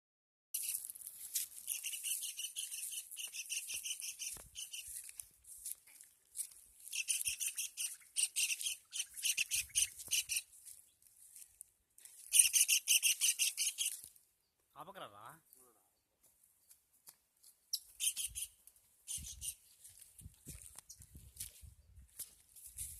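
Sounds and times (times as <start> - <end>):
kingfisher calling: 1.7 - 4.8, 6.9 - 10.4, 12.3 - 13.9.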